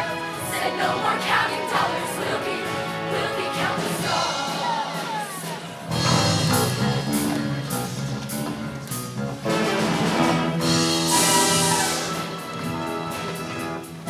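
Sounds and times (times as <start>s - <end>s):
choir singing: 0.0s - 14.0s
live band playing: 0.0s - 14.0s
cymbal crash: 10.6s - 12.4s.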